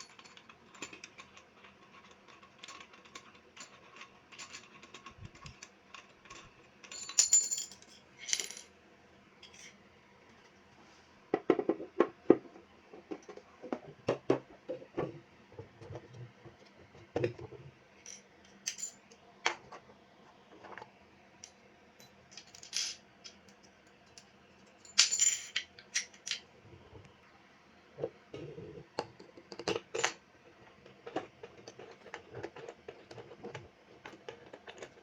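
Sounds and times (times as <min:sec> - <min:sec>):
fan parts clicking and knocking: 0:11.3 - 0:17.6.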